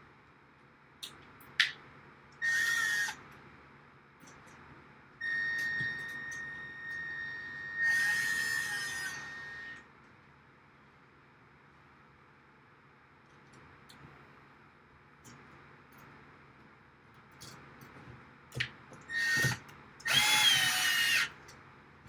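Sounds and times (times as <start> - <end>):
power drill motor whine: 2.4 - 3.2, 5.2 - 9.9, 19.1 - 21.4.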